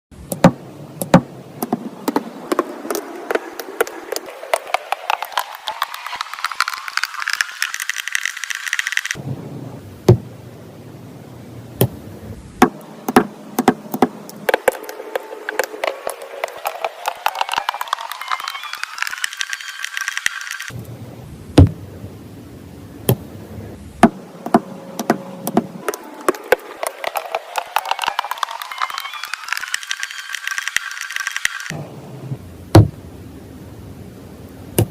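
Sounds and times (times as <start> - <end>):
small hard objects clicking: 0.3 - 9.2, 13.1 - 20.8, 24.5 - 31.7.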